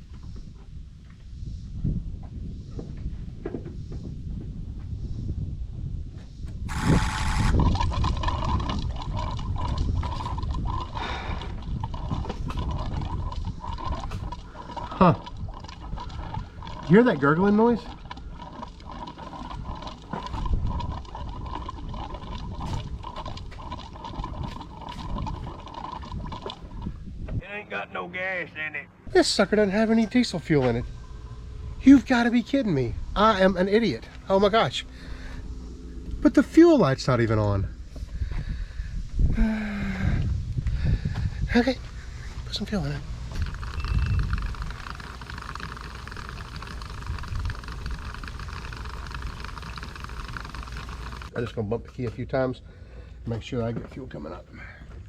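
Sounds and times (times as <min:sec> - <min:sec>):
fuel pump whining: 0:06.5 - 0:27.4, 0:29.1 - 0:51.4
fuel pump gurgling: 0:06.7 - 0:27.3, 0:29.1 - 0:35.5, 0:36.2 - 0:51.5
low rumble: 0:28.9 - 0:45.3.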